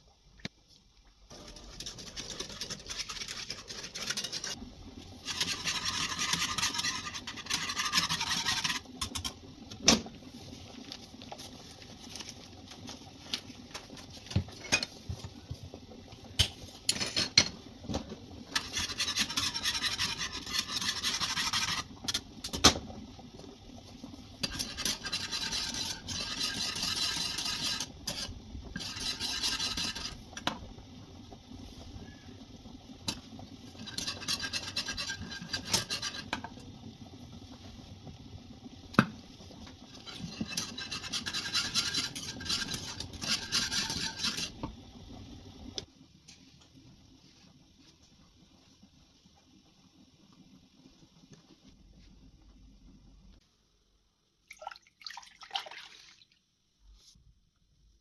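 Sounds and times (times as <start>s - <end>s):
utensils scraping a bowl: 1.3s - 4.6s, 5.2s - 9.4s, 18.5s - 22.1s, 24.4s - 30.4s, 33.8s - 36.5s, 39.9s - 44.6s.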